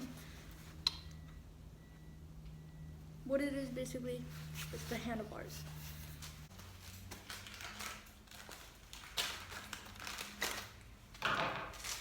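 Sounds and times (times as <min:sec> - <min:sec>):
packaging rustling: 0:06.5 - 0:12.0.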